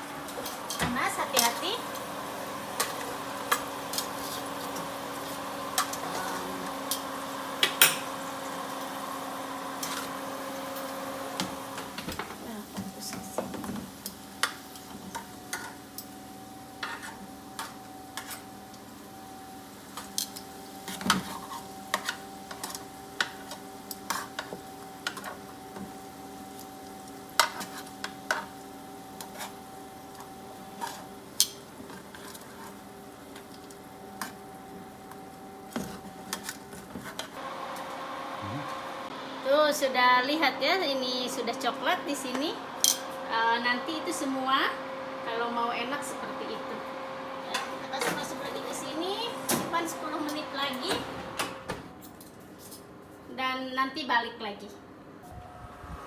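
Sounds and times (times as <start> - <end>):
faint sizzle: 0.0 - 51.1
metal utensil scraping pan: 2.8 - 4.8, 16.8 - 18.5
steady hum: 37.4 - 51.3, 55.2 - 56.0.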